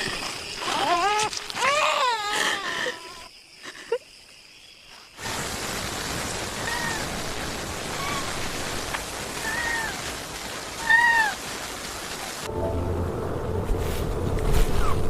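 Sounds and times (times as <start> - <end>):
rain hiss: 0.0 - 15.0
wailing cries: 0.6 - 3.3.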